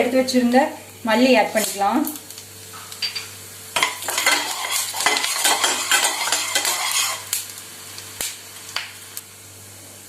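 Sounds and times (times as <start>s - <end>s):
light sizzle: 0.0s - 10.0s
spoon stirring seeds in a pan: 3.8s - 7.6s.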